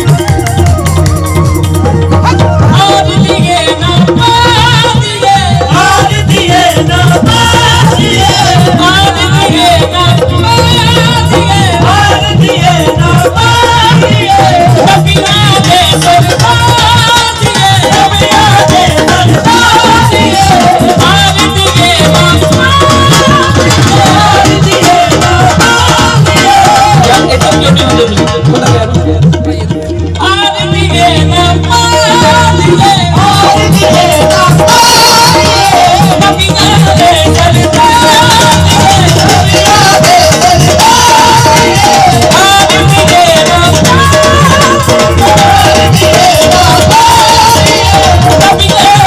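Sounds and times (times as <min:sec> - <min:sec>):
devotional music over loudspeakers: 0:00.0 - 0:49.0
drums: 0:00.0 - 0:49.0
hand percussion: 0:00.0 - 0:49.0
instrumental accompaniment: 0:00.0 - 0:49.0
person singing: 0:02.1 - 0:49.0.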